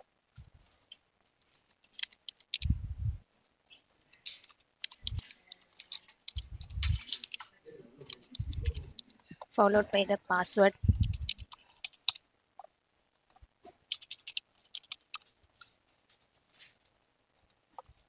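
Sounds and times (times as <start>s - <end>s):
keyboard typing clicks: 4.2s - 9.2s, 11.0s - 12.2s, 13.9s - 15.3s.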